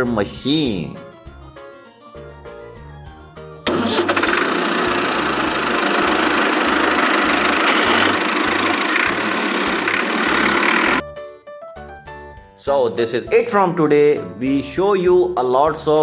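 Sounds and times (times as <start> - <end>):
background music with low beat: 0.0 - 3.9, 4.6 - 16.0
engine running: 3.6 - 11.0.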